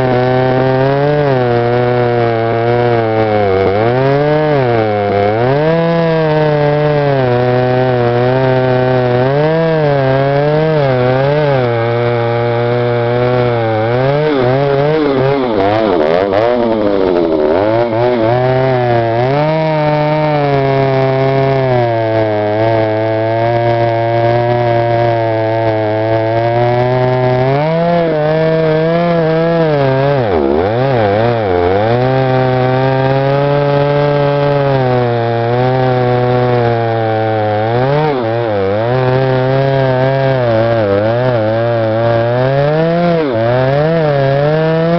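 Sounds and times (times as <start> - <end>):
chainsaw cutting wood: 0.0 - 44.9.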